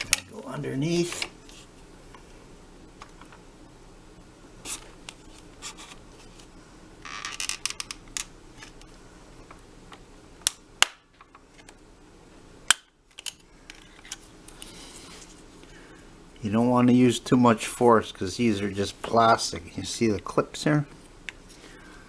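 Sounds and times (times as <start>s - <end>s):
sharp plastic snaps: 10.4s - 11.8s, 12.7s - 14.6s.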